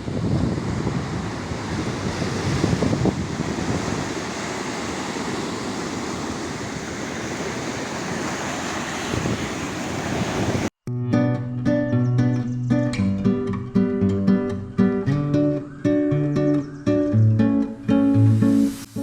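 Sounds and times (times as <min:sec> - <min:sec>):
wind buffeting microphone: 0:00.0 - 0:10.7
sea waves washing ashore: 0:00.0 - 0:10.8, 0:18.0 - 0:19.0.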